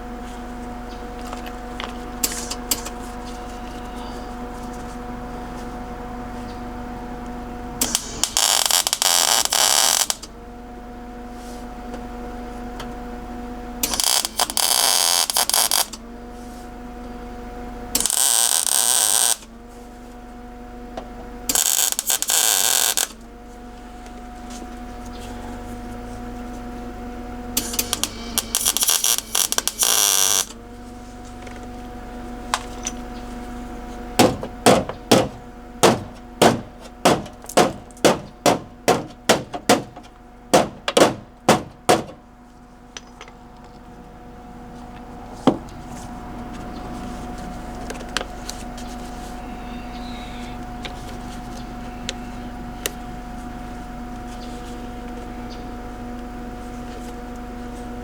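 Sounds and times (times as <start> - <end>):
electrical hum: 0.0 - 58.0
welding arc crackling: 7.8 - 10.2, 13.9 - 15.9, 18.0 - 19.5, 21.5 - 23.2, 27.6 - 30.6
hammer striking sheet metal: 34.2 - 42.2.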